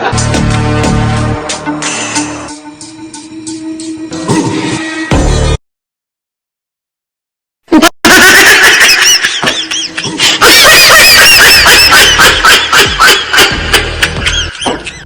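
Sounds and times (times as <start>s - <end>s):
high-pitched squeaky laughter: 7.8s - 15.0s.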